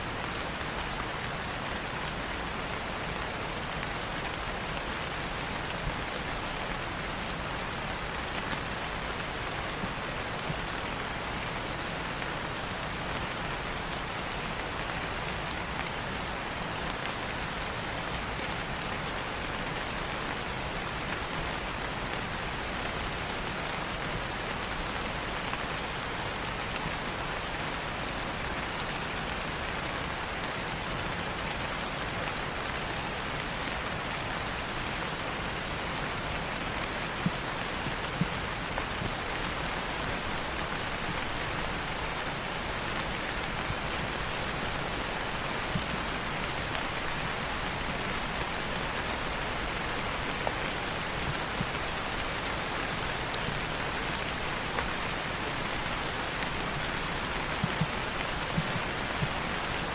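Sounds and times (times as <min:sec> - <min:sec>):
rain falling on foliage: 0:00.0 - 0:59.9.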